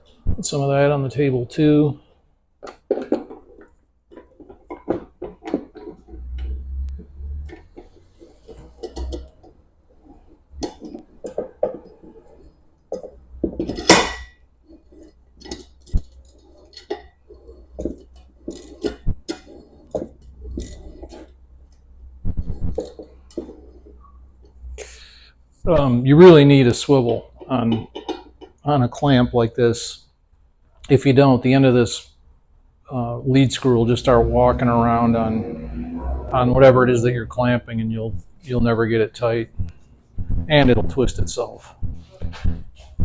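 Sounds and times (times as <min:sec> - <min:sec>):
metal parts clinking and knocking: 0:10.6 - 0:21.3.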